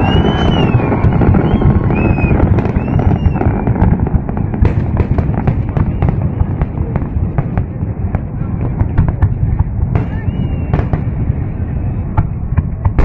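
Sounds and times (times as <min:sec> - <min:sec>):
firework whistles: 0:00.0 - 0:04.0, 0:10.0 - 0:12.1
crackling firework pops: 0:00.0 - 0:11.2
fireworks booming: 0:00.0 - 0:13.0.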